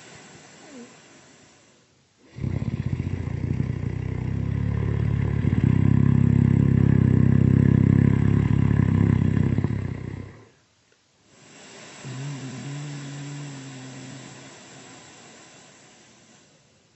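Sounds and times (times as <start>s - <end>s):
loud rattling snore: 2.3s - 10.6s, 11.5s - 16.5s.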